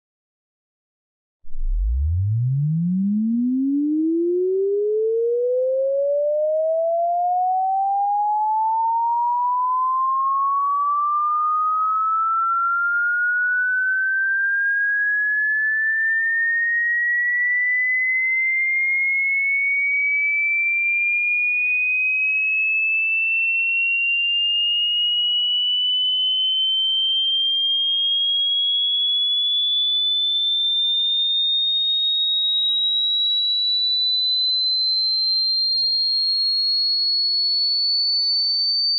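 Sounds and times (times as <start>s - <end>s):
rising sine tone sweep: 1.4s - 16.8s.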